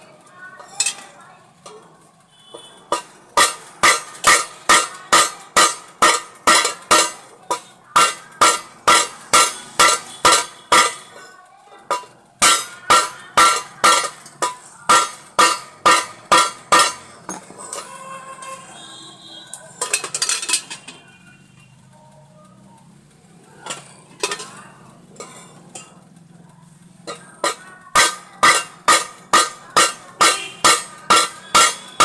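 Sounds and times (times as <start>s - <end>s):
hammer striking metal: 2.9s - 11.3s, 11.9s - 18.5s, 27.1s - 32.0s.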